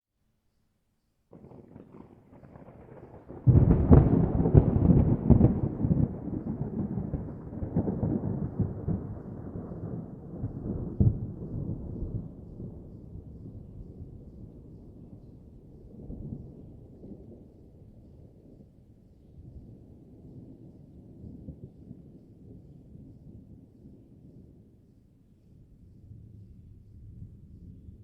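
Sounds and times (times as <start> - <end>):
thunder crackling peal: 1.3 - 17.9
distant thunder rumbling: 1.3 - 18.9.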